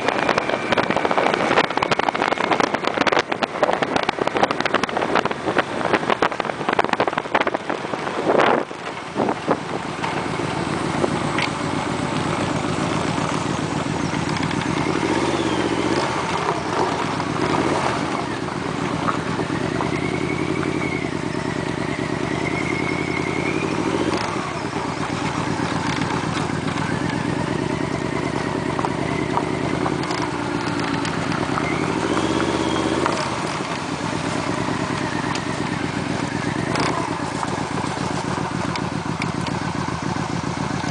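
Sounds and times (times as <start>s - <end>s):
wind buffeting microphone: 0.0s - 22.6s
motorcycle engine running: 0.0s - 40.9s.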